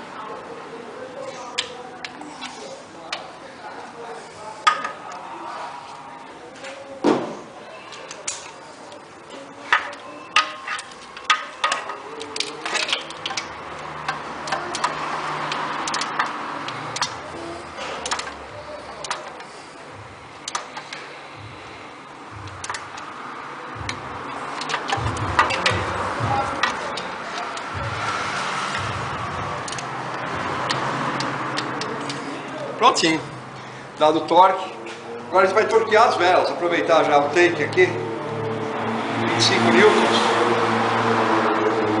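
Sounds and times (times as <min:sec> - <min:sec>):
torque wrench ratcheting: 0:10.4 - 0:19.5, 0:23.8 - 0:32.2.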